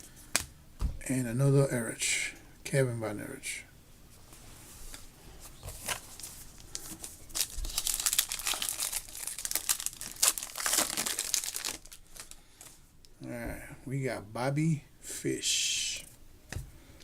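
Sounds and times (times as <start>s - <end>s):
card pack wrapper tearing and crinkling: 5.8s - 12.4s.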